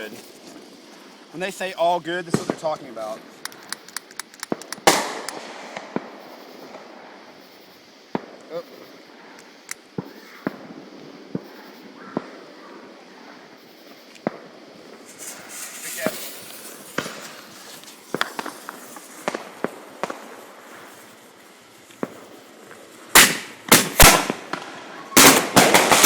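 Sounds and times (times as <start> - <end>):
fireworks popping and cracking: 0.0 - 7.2, 8.1 - 11.6, 14.0 - 26.0
firework crackling: 0.0 - 26.0
loud firework bangs: 2.3 - 3.7, 4.5 - 7.2, 14.2 - 21.0, 23.1 - 26.0.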